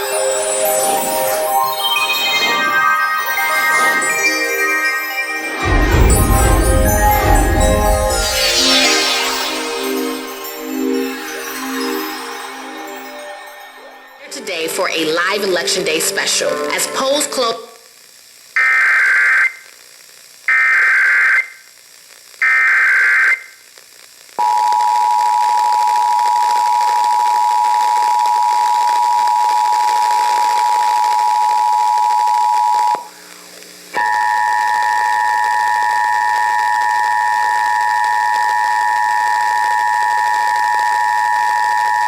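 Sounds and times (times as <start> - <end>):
warbling digital header tones: 0.8 - 15.2
low hum: 5.5 - 14.6.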